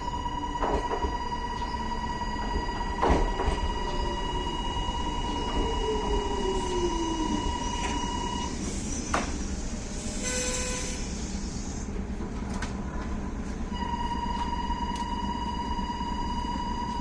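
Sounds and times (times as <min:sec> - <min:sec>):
low train rumble: 0:00.0 - 0:17.0
train hiss: 0:08.0 - 0:12.0
level crossing warning bell: 0:13.7 - 0:17.0.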